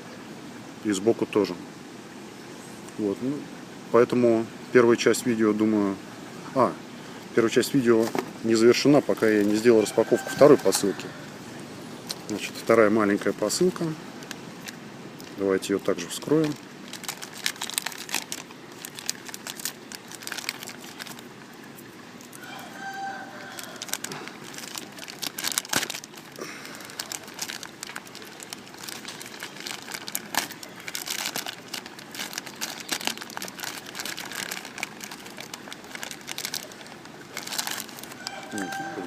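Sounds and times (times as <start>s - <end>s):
plastic packaging tearing and crinkling: 16.0s - 22.4s, 23.5s - 38.9s.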